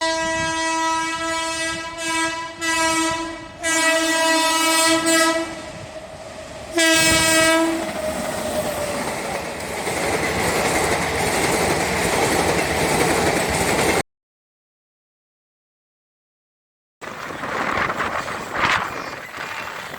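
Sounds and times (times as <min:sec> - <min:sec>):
locomotive horn blasts: 0:00.0 - 0:05.9, 0:06.7 - 0:08.0
train rumble and wheel clatter: 0:00.0 - 0:14.0, 0:17.0 - 0:19.9.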